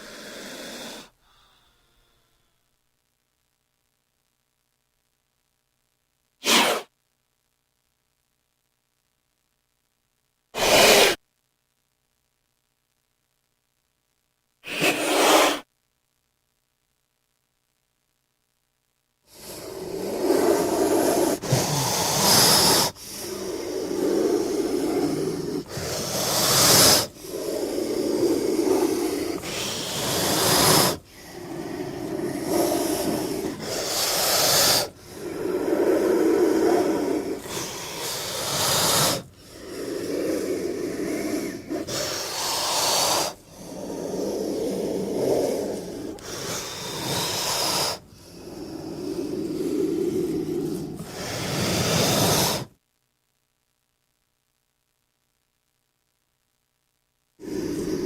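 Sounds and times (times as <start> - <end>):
snake hissing: 0.0 - 1.2, 6.4 - 6.9, 10.6 - 11.2, 14.6 - 15.7, 19.3 - 52.7, 57.4 - 58.0.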